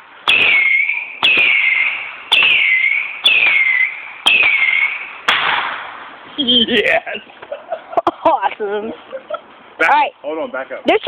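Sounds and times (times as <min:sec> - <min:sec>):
firework falling whistle: 0:00.3 - 0:05.8
firework pops: 0:02.3 - 0:06.0.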